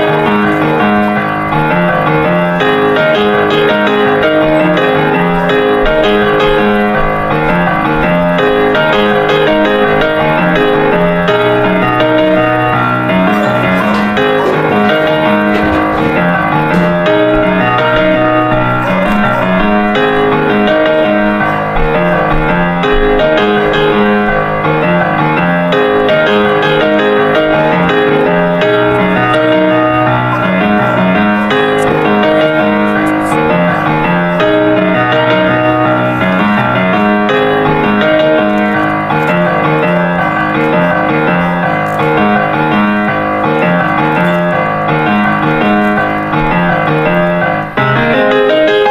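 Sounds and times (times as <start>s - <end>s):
piano music: 0.0s - 48.9s.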